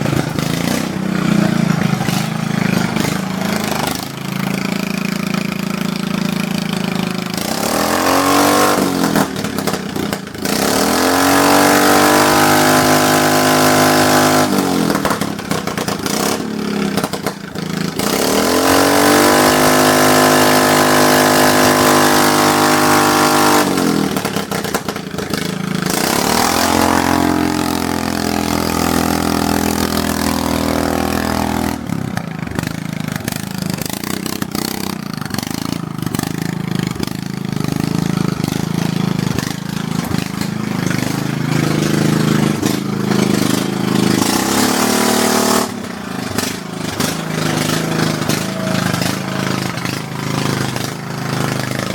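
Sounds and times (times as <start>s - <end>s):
lawn mower engine revving: 0.0s - 51.9s.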